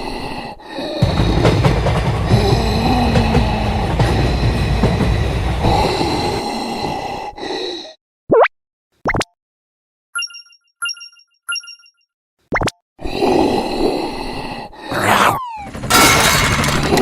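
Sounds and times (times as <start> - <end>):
train rumbling past: 1.0 - 7.2.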